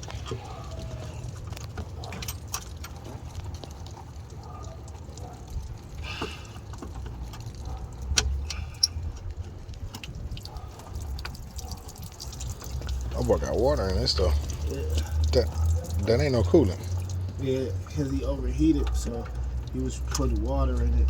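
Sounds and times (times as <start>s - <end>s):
metal tools clinking: 0.4s - 3.2s.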